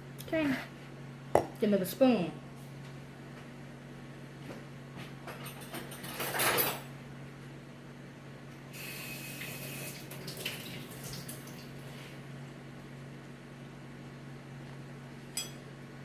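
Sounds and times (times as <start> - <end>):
kitchen utensils clattering: 5.3 - 6.9.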